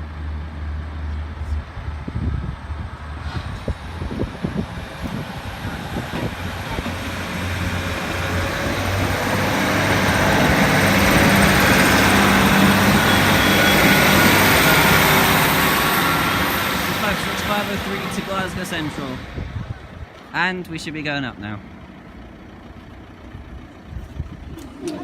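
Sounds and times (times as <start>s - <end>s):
diesel train engine drone: 0.0s - 25.0s
wheels on rails: 4.2s - 19.0s.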